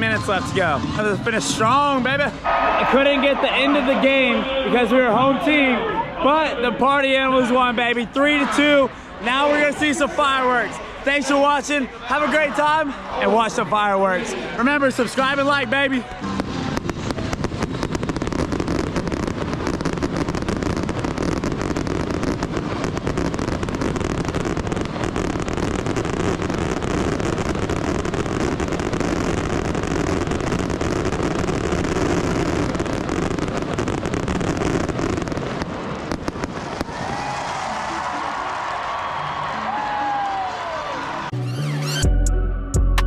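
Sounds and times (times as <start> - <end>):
fireworks crackling and banging: 14.6 - 39.2.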